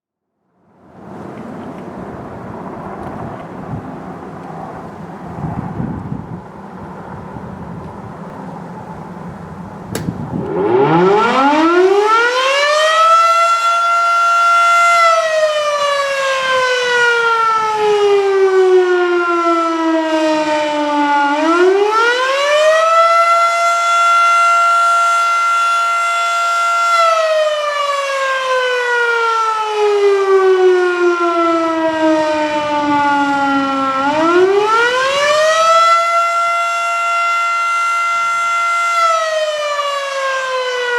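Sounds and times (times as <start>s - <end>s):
fire siren winding: 9.9s - 40.9s.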